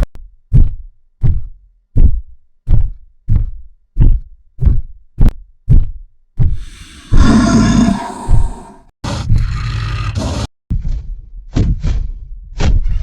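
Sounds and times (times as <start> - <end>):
giant booming footsteps: 0.6 - 8.9.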